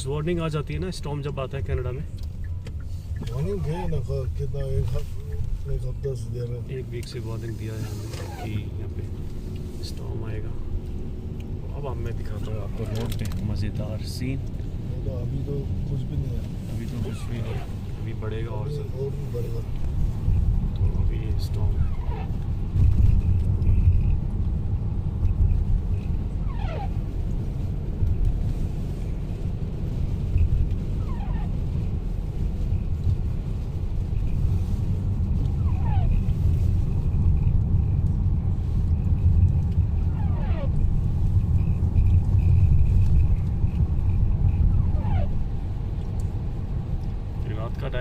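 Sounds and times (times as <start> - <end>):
car driving low rumble: 0.0 - 48.0
strong wind: 19.1 - 47.5
short falling squeak: 26.4 - 27.0, 35.6 - 36.2, 40.1 - 40.7.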